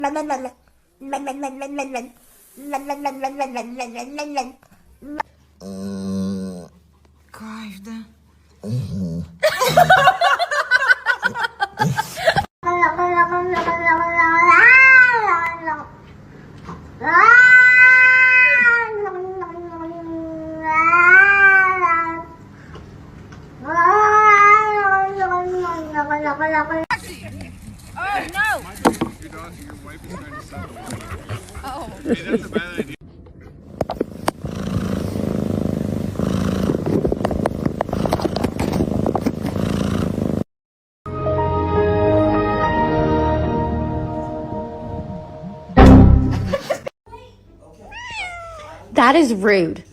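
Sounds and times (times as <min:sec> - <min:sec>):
cat yowling: 0:13.0 - 0:15.8, 0:17.0 - 0:22.2, 0:23.6 - 0:25.4, 0:47.9 - 0:48.9
cat purring: 0:34.0 - 0:40.4.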